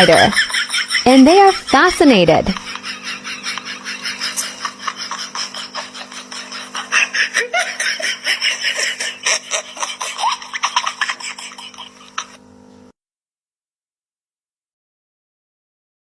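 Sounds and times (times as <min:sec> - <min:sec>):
children laughing: 0:00.0 - 0:12.4.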